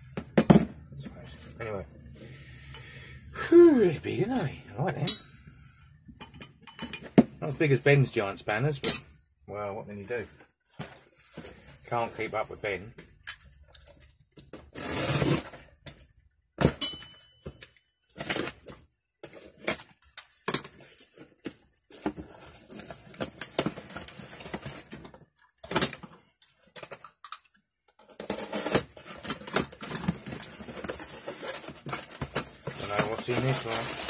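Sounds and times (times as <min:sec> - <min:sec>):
steel spanners clinking: 0:05.1 - 0:07.2
handling rustle: 0:28.5 - 0:34.0.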